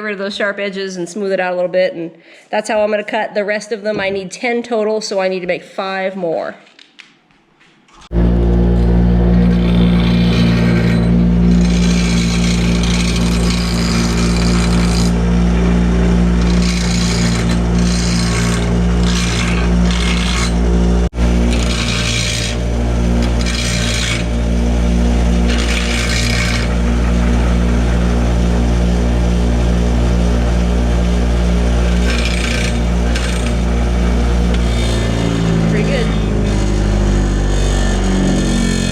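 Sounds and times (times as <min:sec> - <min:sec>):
electric grinder running: 0:08.1 - 0:38.9
metal rasping on grinding wheel: 0:08.1 - 0:38.9.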